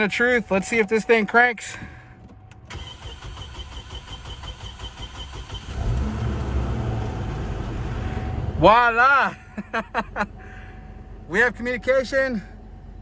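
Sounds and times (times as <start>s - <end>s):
engine cranking and starting: 1.8s - 7.6s.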